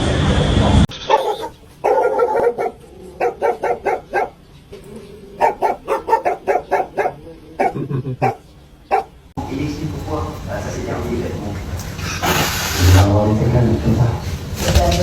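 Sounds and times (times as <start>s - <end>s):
dog barking: 1.0s - 4.4s, 5.4s - 9.2s.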